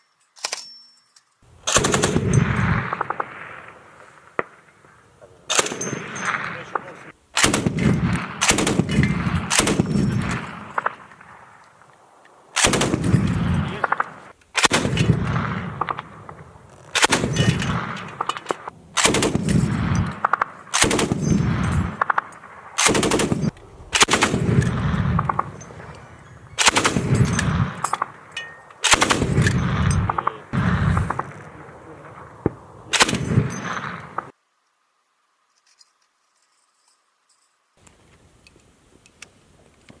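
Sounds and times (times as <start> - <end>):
rolling gunfire echo: 1.5 - 34.4
heavy machine gun bursts: 16.9 - 22.2, 22.8 - 28.1.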